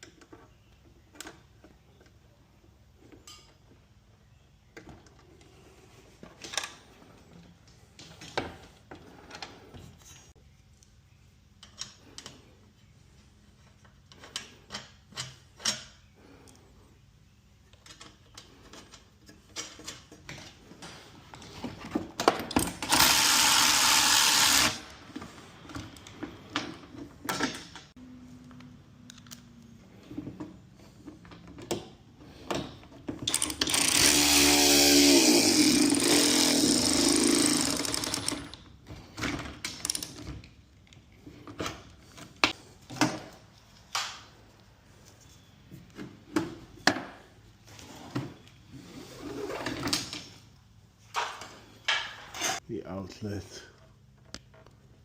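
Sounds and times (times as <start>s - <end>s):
power tool driving fasteners: 22.5s - 25.3s, 33.2s - 38.7s.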